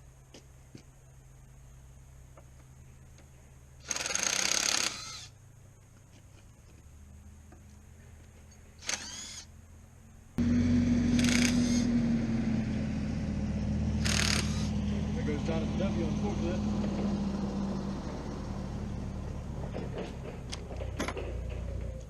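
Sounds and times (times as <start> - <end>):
loud engine running: 10.4 - 21.9
ratchet wrench clicking: 14.0 - 14.7.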